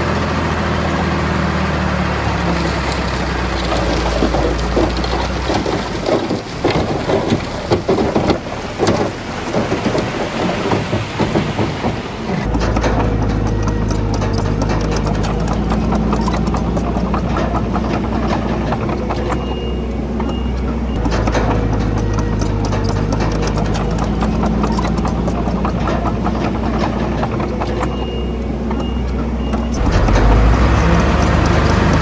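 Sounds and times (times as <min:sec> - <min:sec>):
diesel machine engine running: 0:00.0 - 0:32.0
rock and soil clattering: 0:00.0 - 0:32.0.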